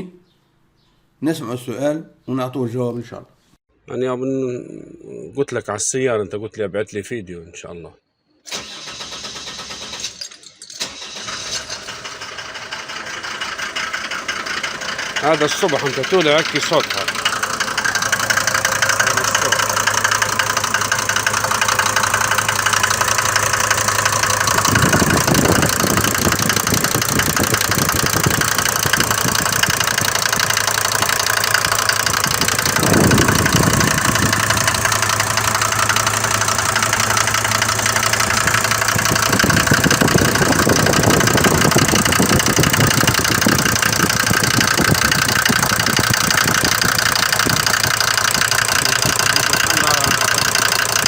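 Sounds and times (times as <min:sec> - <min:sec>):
man talking: 0:03.9 - 0:08.0, 0:15.2 - 0:17.2, 0:18.8 - 0:19.8, 0:48.8 - 0:50.4
diesel engine knocking: 0:11.7 - 0:51.0.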